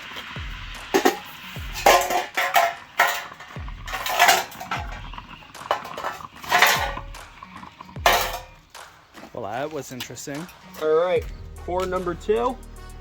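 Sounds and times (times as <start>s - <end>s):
background music: 0.0s - 13.0s
metallic clanks and clinks: 1.0s - 7.4s, 8.0s - 8.6s
deep kick drum beat: 11.2s - 13.0s.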